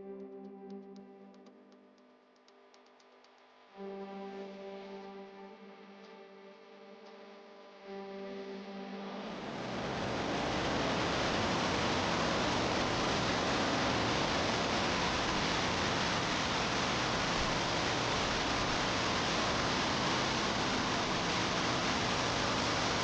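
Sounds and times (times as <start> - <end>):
waterfall rushing: 9.8 - 23.0.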